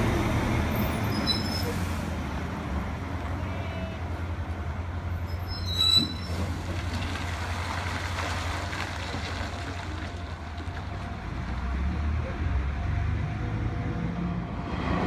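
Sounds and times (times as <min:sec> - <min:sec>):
high-pitched train squeal: 0:00.9 - 0:01.9, 0:05.3 - 0:06.4.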